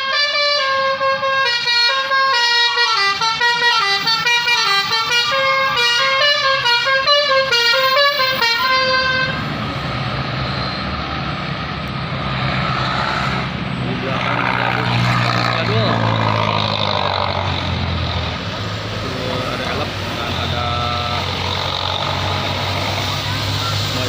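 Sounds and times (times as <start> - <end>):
bus musical horn melody: 0.0 - 9.5
bus engine and road noise: 0.0 - 24.0.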